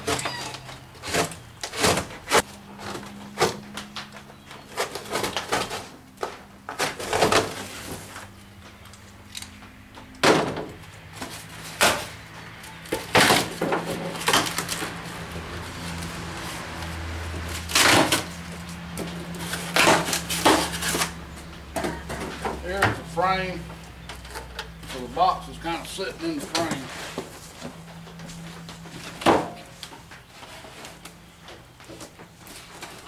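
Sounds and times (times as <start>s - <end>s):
box cutter slicing cardboard: 1.0s - 3.6s, 17.5s - 18.4s.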